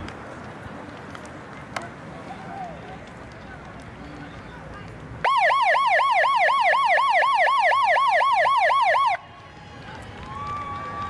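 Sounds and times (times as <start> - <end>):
electronic siren yelping: 5.2 - 9.2.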